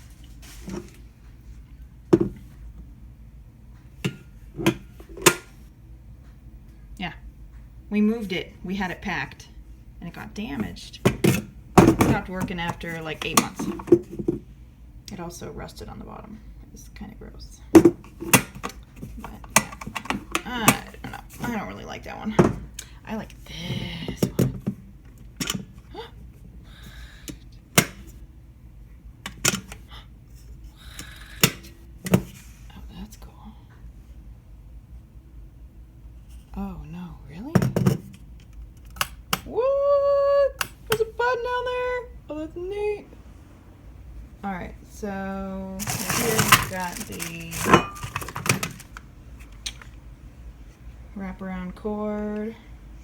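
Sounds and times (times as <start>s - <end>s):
electric kettle parts clacking: 4.0s - 5.5s, 11.1s - 14.4s, 17.8s - 21.6s, 25.4s - 25.7s, 45.8s - 49.0s
faint rustling: 45.8s - 49.5s.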